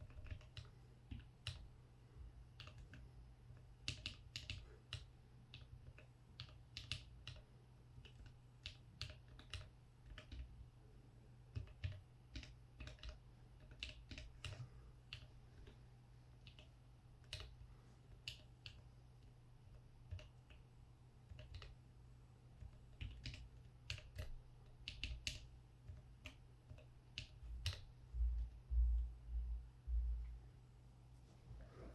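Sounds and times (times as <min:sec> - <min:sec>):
mechanical keyboard typing: 0:00.0 - 0:01.6, 0:02.6 - 0:03.0, 0:03.8 - 0:07.4, 0:08.0 - 0:10.6, 0:11.5 - 0:15.3, 0:16.4 - 0:17.5, 0:20.1 - 0:20.6, 0:21.3 - 0:21.8, 0:22.6 - 0:27.9.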